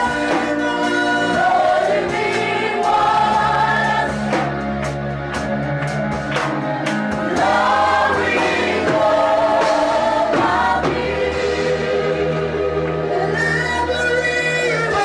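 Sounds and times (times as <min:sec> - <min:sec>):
band playing: 0:00.0 - 0:15.0
choir singing gospel music: 0:00.0 - 0:15.0.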